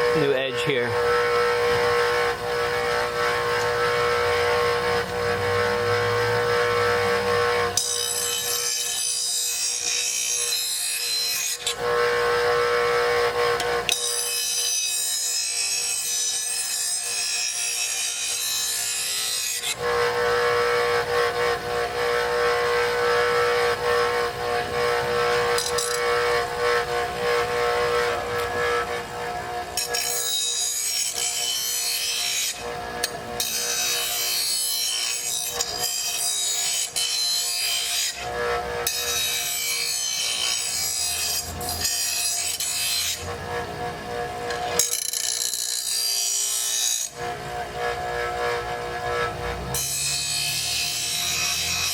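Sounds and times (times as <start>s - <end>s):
electric grinder whining: 0.0s - 51.9s.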